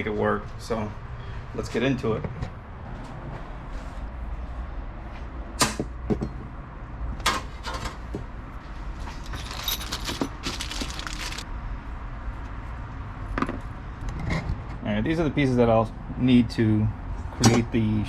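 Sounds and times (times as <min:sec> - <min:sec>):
rustling and scraping: 0:08.6 - 0:11.4
clinks and knocks of tools: 0:09.0 - 0:11.4.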